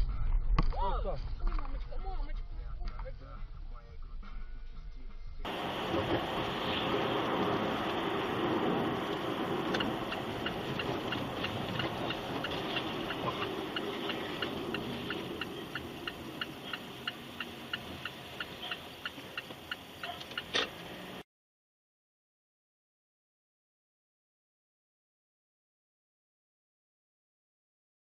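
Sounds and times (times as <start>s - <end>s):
engine and road noise: 2.9s - 21.2s
car indicator relay clicking: 9.0s - 20.8s.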